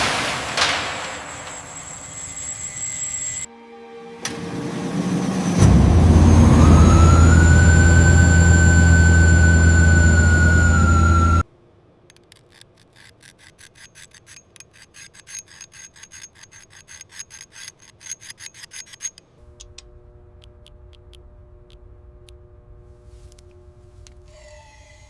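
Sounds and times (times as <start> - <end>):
hand tool rasping strokes: 12.3 - 19.3, 24.2 - 25.0
low steady hum: 19.4 - 25.0.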